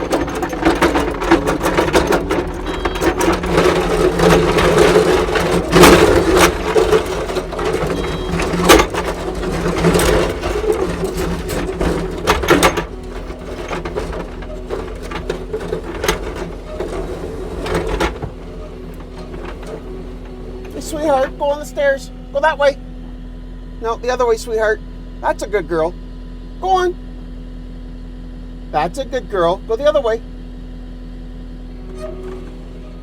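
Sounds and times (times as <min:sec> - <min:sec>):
sharp knocks and clatter: 0:00.0 - 0:21.5
diesel engine running under load: 0:00.0 - 0:33.0.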